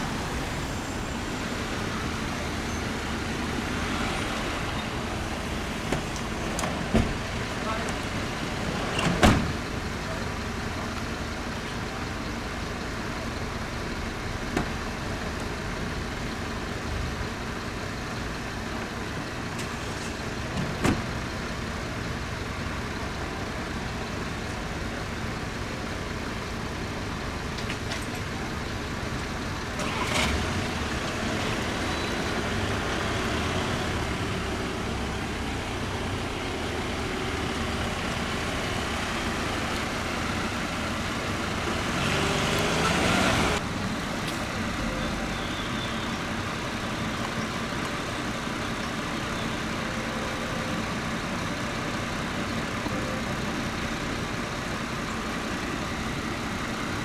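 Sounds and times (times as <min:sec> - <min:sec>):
vehicle engine and road noise: 0:00.0 - 0:57.0.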